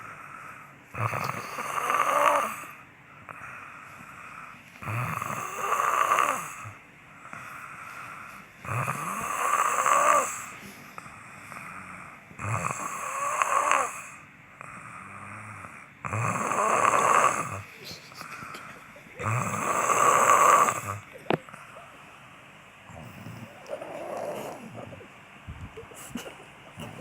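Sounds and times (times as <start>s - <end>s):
quiet breathing: 0.0s - 1.7s, 2.4s - 5.0s, 6.3s - 27.0s
person snoring: 0.9s - 2.8s, 4.2s - 21.7s, 22.9s - 25.1s.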